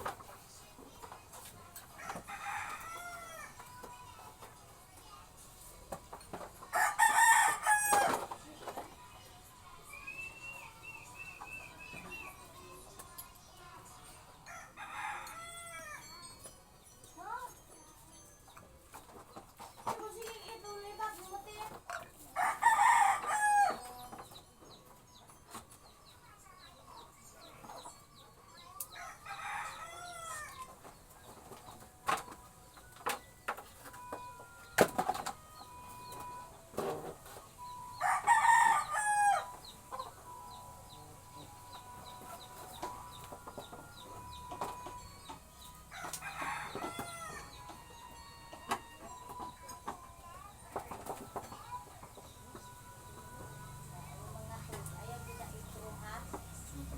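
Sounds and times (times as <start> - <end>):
rooster crowing: 6.7 - 8.2, 22.4 - 23.9, 38.0 - 39.6, 45.9 - 47.6.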